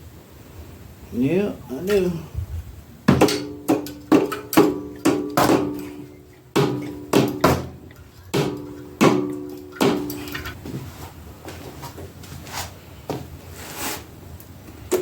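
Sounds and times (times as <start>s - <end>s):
sharp metal strikes ringing: 3.2s - 10.6s.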